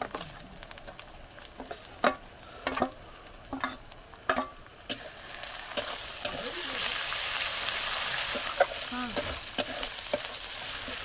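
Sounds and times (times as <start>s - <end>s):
onions sizzling: 0.0s - 11.0s
spoon scraping a pan: 3.5s - 7.0s, 8.2s - 11.0s.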